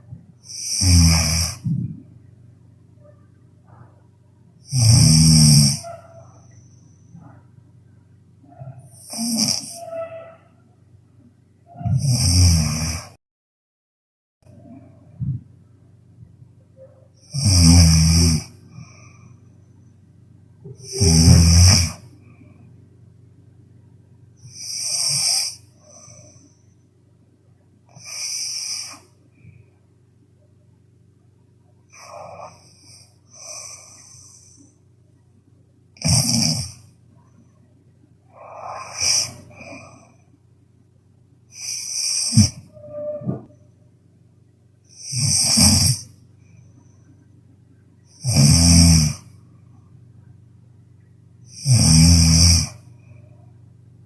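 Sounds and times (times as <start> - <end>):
person snoring loudly: 0.4 - 1.7, 4.6 - 5.9, 8.9 - 9.9, 11.9 - 13.2, 17.2 - 19.2, 20.7 - 22.1, 24.4 - 26.4, 27.9 - 29.1, 31.9 - 34.6, 36.0 - 36.8, 38.3 - 40.1, 41.5 - 42.8, 44.9 - 46.2, 48.1 - 49.3, 51.5 - 52.9.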